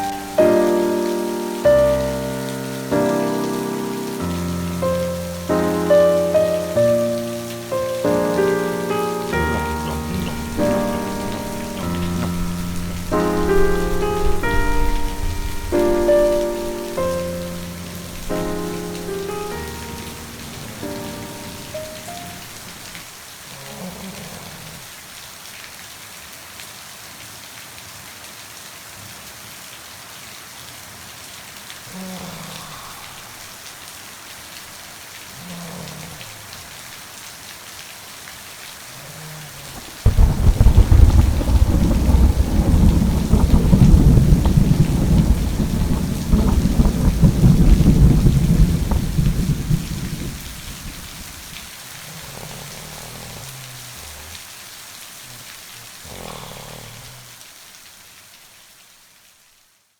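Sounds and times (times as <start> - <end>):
steady rain falling: 0.0 - 59.9
thunderclap rumbling: 9.3 - 22.9, 39.7 - 51.6.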